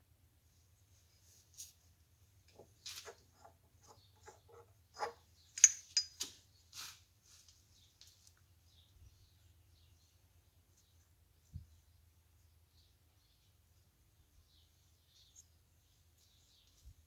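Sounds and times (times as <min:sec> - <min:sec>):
metal tools clicking and scraping: 0:03.0 - 0:06.4.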